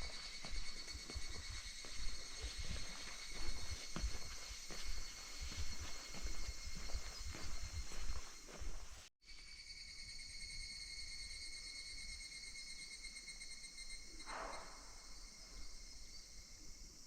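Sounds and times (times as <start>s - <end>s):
cicadas chorus: 0.0s - 17.0s.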